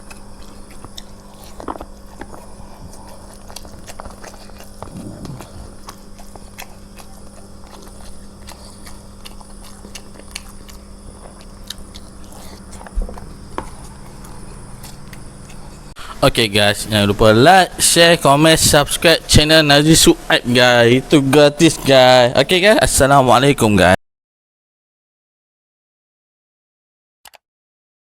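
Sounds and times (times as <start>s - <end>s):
person chewing rice: 0.0s - 16.2s
steady low hum: 0.0s - 24.0s.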